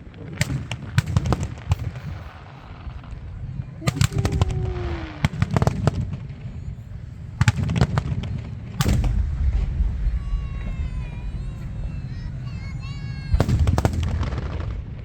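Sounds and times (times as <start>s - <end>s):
continuous low rumble: 0.0s - 15.0s
fireworks bangs and crackles: 0.0s - 15.0s.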